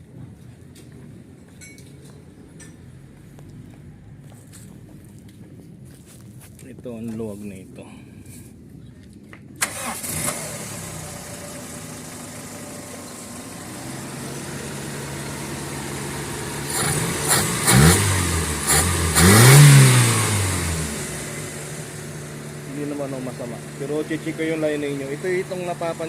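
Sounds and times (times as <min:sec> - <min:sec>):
engine starting and idling: 0:09.6 - 0:26.0.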